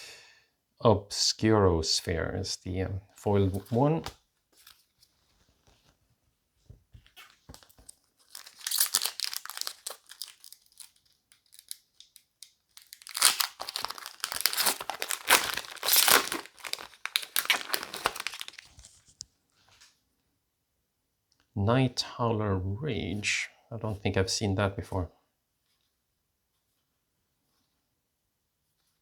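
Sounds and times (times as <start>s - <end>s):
foil wrapper crinkling and tearing: 7.5s - 19.2s.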